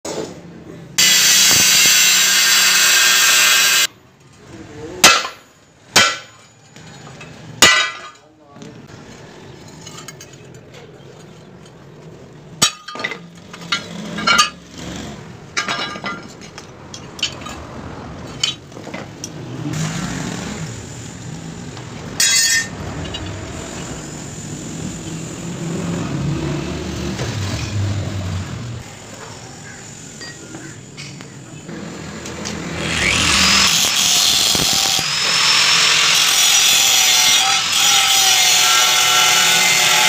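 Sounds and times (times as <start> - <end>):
metal clinking and clanking: 9.6 - 11.8, 12.6 - 14.7, 15.6 - 17.6.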